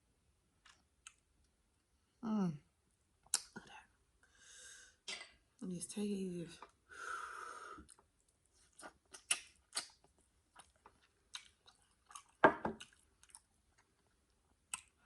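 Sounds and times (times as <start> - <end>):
person chewing seafood: 7.8 - 15.0.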